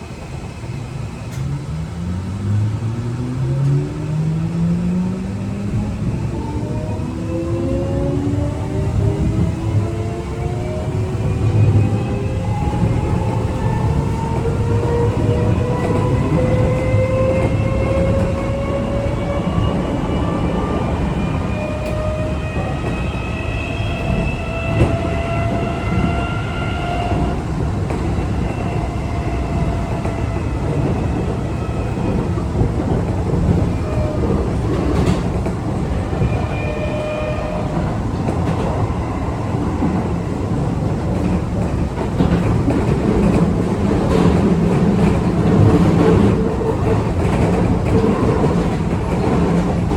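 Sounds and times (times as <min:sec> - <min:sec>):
train inverter whining tones: 0:00.1 - 0:49.9
rail-joint clicks: 0:01.3 - 0:01.6.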